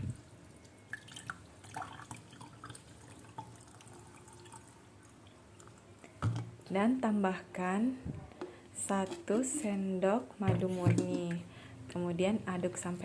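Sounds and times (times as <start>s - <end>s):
liquid dripping into container: 0.1s - 6.6s.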